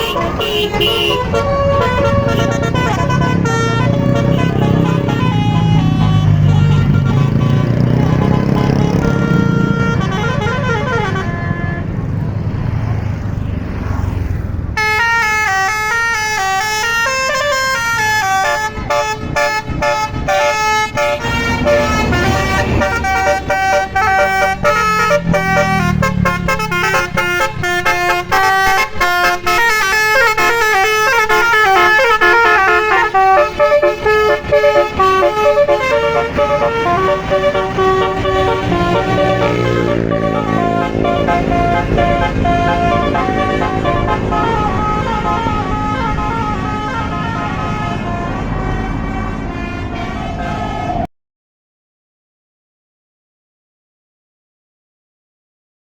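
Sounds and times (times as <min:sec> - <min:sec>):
multi-tone horn playing a tune: 0:00.0 - 0:12.1, 0:14.8 - 0:51.1
bus engine running: 0:00.0 - 0:51.1.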